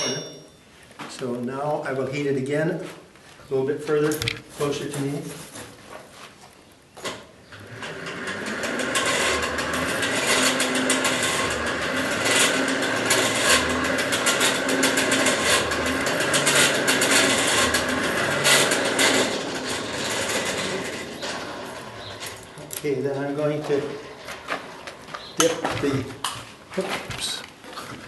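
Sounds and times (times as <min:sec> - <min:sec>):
forge blower whirring: 0:07.6 - 0:24.2.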